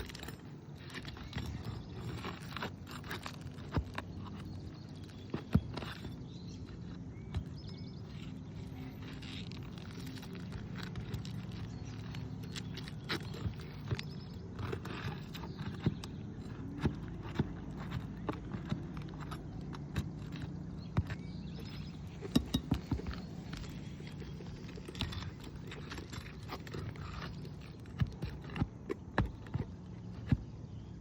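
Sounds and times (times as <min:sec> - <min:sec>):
steady low hum: 0:00.0 - 0:31.0
hand tools prying nails from shingles: 0:09.0 - 0:30.4.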